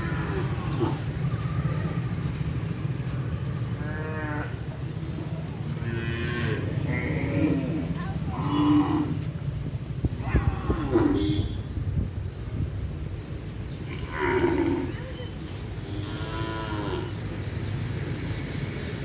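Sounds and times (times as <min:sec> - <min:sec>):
drawn-out animal calls: 0:00.0 - 0:11.8, 0:13.6 - 0:18.0.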